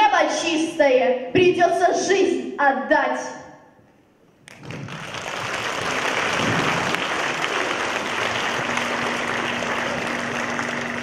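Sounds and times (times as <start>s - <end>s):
audience applause: 4.5s - 11.0s.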